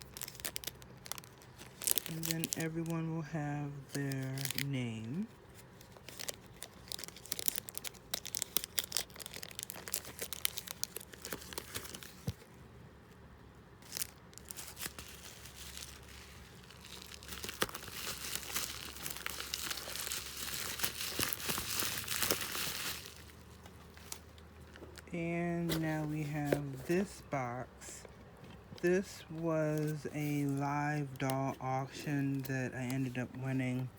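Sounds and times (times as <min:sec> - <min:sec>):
packaging crinkling: 0:00.0 - 0:03.0, 0:03.8 - 0:12.5, 0:13.8 - 0:25.1.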